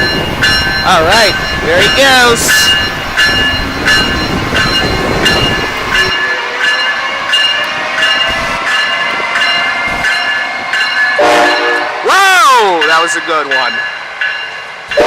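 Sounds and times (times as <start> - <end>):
railroad crossing bell ringing: 0.0 - 15.0
train rumble: 0.0 - 15.0.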